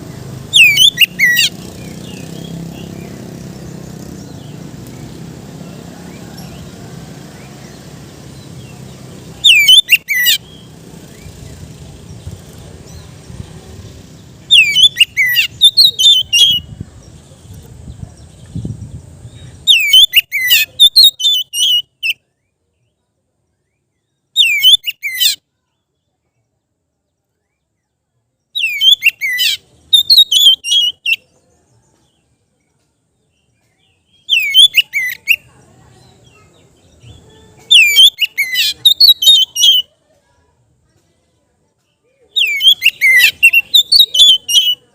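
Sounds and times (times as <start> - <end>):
songbird whistling: 0.5 - 3.2, 9.4 - 11.6, 14.4 - 16.7, 19.4 - 22.2, 24.4 - 25.4, 28.6 - 31.2, 34.1 - 35.5, 37.6 - 39.9, 42.3 - 44.9.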